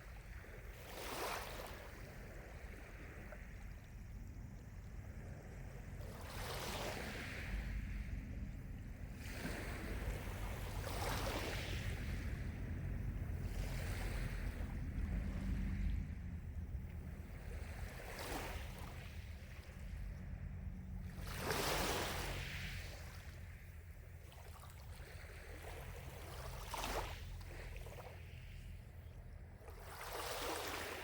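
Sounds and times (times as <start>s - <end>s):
lake waves lapping: 0.0s - 31.0s
low rumble: 11.9s - 21.4s.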